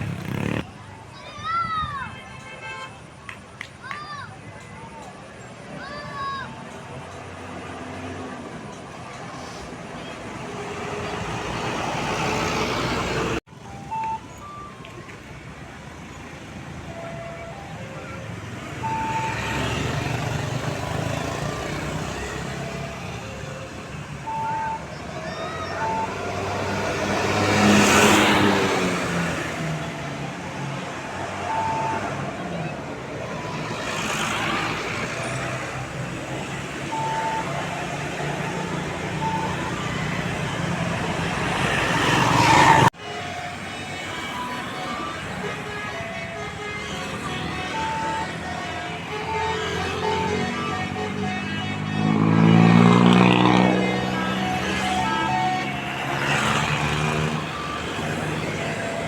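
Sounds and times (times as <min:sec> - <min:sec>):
bus engine passing: 0:00.0 - 0:01.3, 0:03.2 - 0:59.0
traffic noise: 0:00.0 - 0:59.0
musical horn notes: 0:43.3 - 0:56.5.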